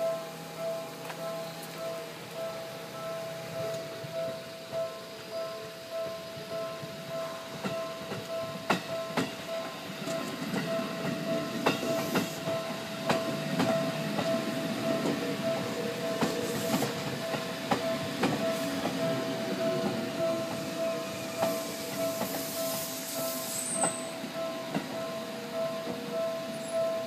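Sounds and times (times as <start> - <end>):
level crossing bell ringing: 0.0 - 27.0
low train rumble: 0.0 - 27.0
train wheels clacking on rail joints: 6.0 - 27.0.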